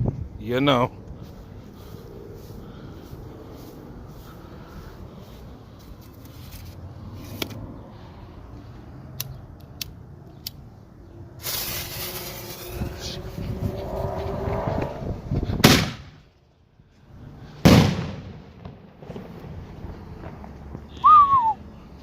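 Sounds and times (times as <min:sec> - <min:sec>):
faint sharp clicks: 0:09.2 - 0:10.6
firework shell firing: 0:11.4 - 0:12.6, 0:15.6 - 0:16.2, 0:17.7 - 0:19.4
firework fuse hissing: 0:11.4 - 0:12.9
low rumble: 0:13.2 - 0:15.7.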